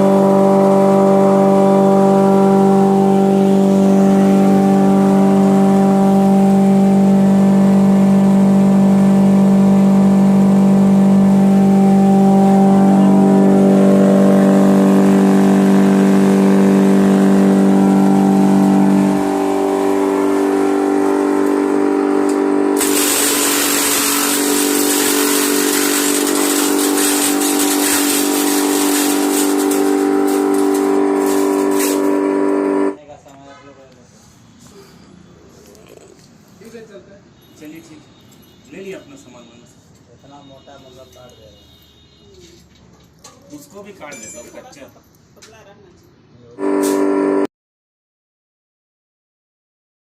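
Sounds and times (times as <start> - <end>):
shredder motor humming: 0.0 - 33.0
material crackling in shredder: 21.2 - 32.2.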